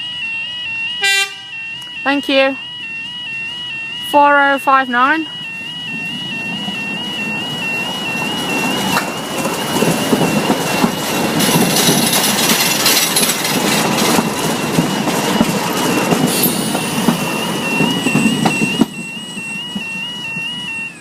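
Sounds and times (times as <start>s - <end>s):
two-tone warbling crossing alarm: 0.0s - 21.0s
train wheels rumbling on rails: 4.2s - 21.0s.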